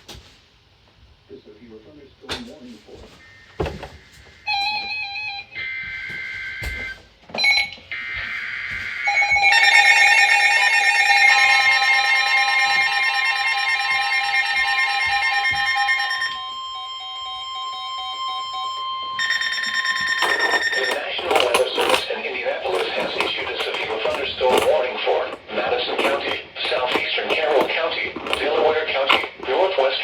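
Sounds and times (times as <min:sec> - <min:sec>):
long steady electronic tone: 0:07.9 - 0:21.2.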